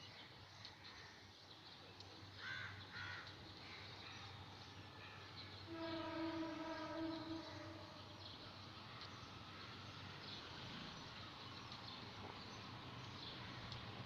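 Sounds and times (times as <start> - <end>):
distant horn steady note: 5.6 - 8.5.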